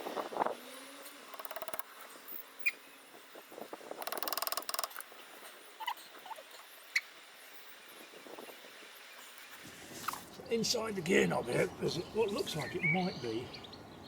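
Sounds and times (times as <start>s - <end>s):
sharp clicks: 1.3s - 1.9s, 4.0s - 5.1s.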